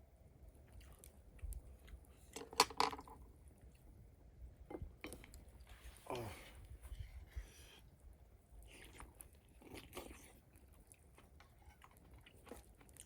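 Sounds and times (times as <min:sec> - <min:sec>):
person chewing: 0:00.7 - 0:02.4, 0:08.6 - 0:13.0
wet eating sound: 0:08.6 - 0:13.0.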